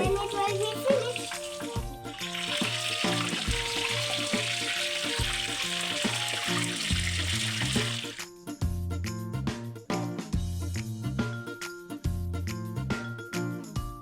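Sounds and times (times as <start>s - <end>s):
chicken deep-frying in oil: 0.0s - 8.3s
background music with bass: 0.0s - 14.0s.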